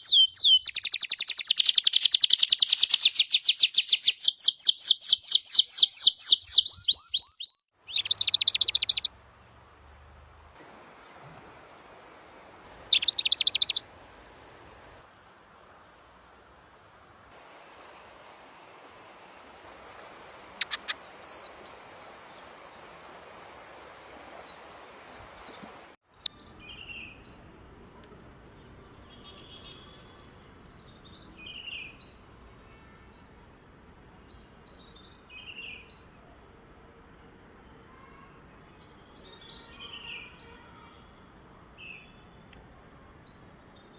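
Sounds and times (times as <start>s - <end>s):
small birds chirping: 0.0s - 10.6s, 12.8s - 13.8s, 19.7s - 23.4s, 24.0s - 36.5s, 37.4s - 43.9s
steady hiss: 10.5s - 26.0s
sharp clicks: 20.6s - 21.0s.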